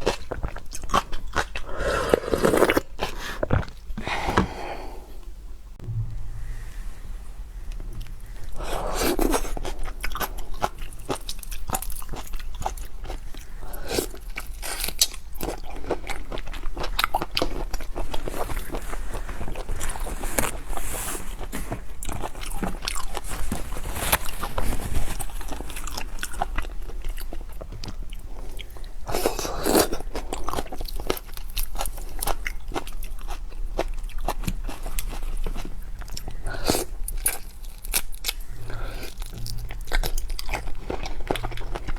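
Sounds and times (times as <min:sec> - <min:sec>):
person chewing crunchy food: 0:00.0 - 0:04.5, 0:08.0 - 0:20.8, 0:21.4 - 0:41.9.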